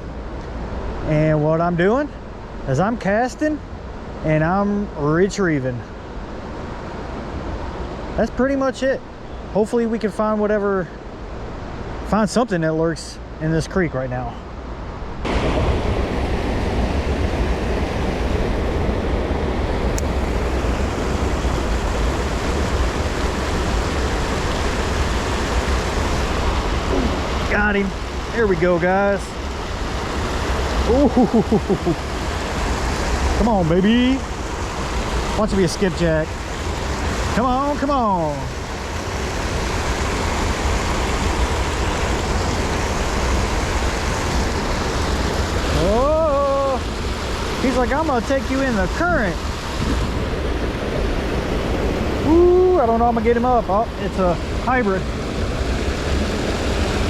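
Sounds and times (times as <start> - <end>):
creek current rushing: 0.0 - 57.0
wind buffeting microphone: 36.1 - 57.0.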